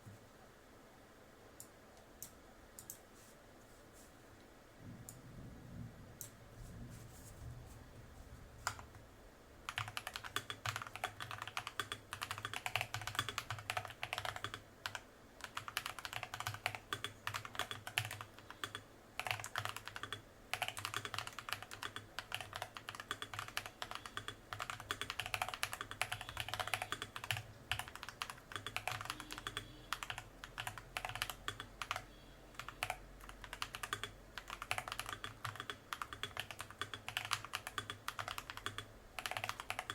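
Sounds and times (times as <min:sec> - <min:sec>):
fast typing on mechanical keyboard: 0:08.6 - 0:09.0, 0:09.6 - 0:39.9.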